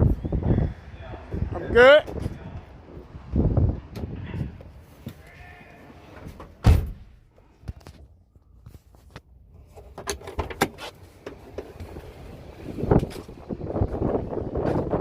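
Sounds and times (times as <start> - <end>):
vehicle door shutting: 6.2 - 7.1.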